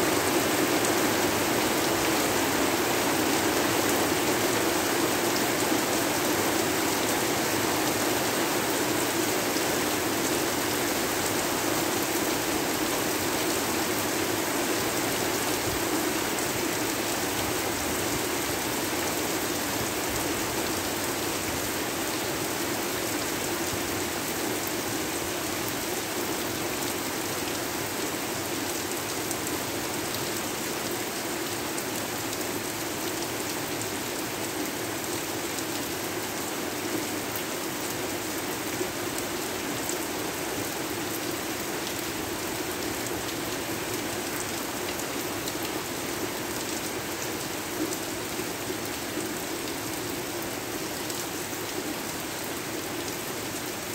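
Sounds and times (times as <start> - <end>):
steady rain hiss: 0.0 - 53.9.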